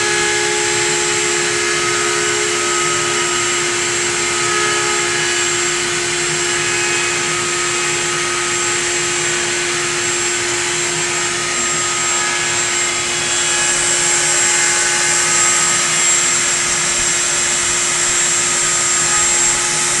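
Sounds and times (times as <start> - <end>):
metal lathe turning: 0.0 - 20.0
router running with high whine: 0.0 - 20.0.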